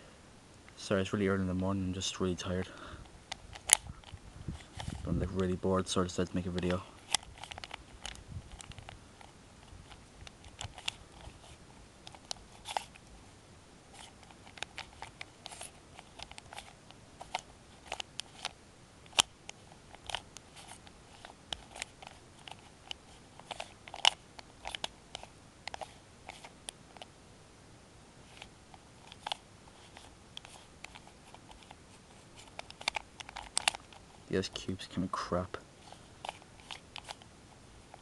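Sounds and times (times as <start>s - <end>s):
sharp plastic snaps: 6.2s - 11.3s, 14.0s - 27.1s, 32.4s - 34.7s, 36.2s - 37.3s
puzzle cube clicking: 19.9s - 27.1s, 32.4s - 34.6s, 36.2s - 37.3s.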